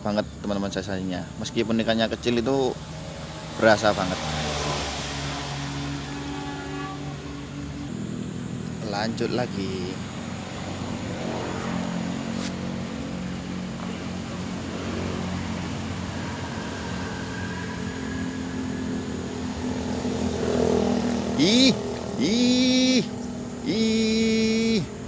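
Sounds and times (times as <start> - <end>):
roadside traffic: 0.0 - 25.0
vehicle horn blasts: 6.0 - 7.6.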